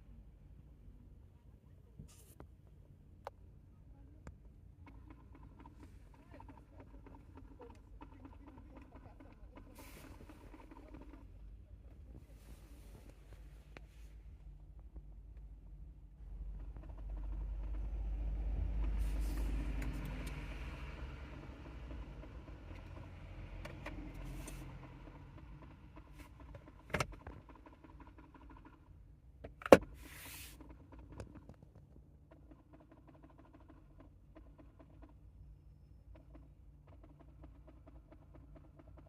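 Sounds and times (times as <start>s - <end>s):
car engine running: 4.7s - 31.6s.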